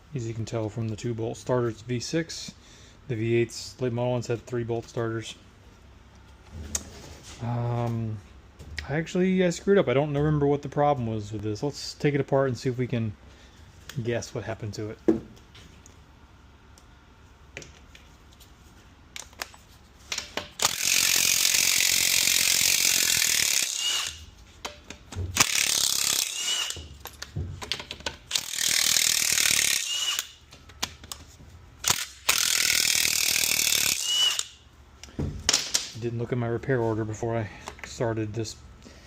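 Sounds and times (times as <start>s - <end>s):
power tool spinning bolts: 20.6s - 24.3s, 25.4s - 27.0s, 28.2s - 30.4s, 31.8s - 34.6s.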